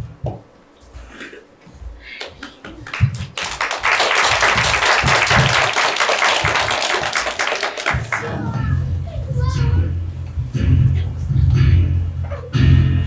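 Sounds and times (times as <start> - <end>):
audience applauding: 2.2 - 8.5.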